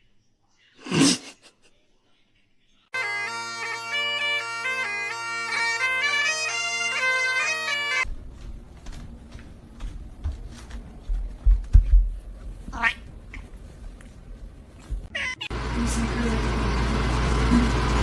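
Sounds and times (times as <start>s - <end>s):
bagpipe music: 3.0s - 8.1s.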